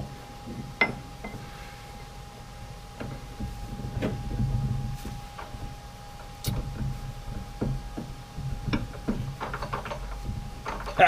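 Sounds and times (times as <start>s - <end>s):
faint steady hum: 0.0s - 11.0s
steel parts knocking and scraping: 6.4s - 11.0s.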